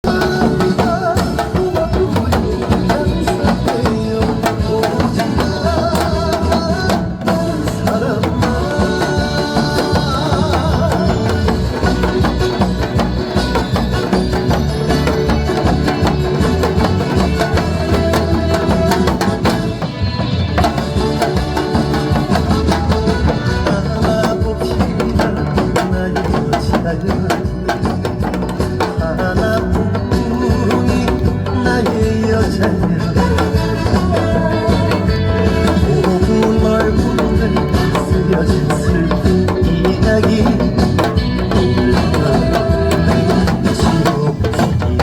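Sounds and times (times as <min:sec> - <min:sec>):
backing song melody: 0:00.0 - 0:45.0
hourglass drum beaten fast: 0:20.6 - 0:45.0.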